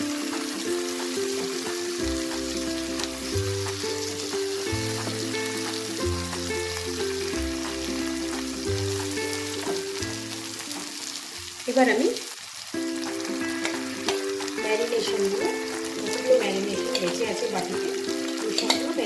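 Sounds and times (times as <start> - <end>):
background music with bass line: 0.0 - 10.8
chicken sizzling in hot oil: 0.0 - 19.0.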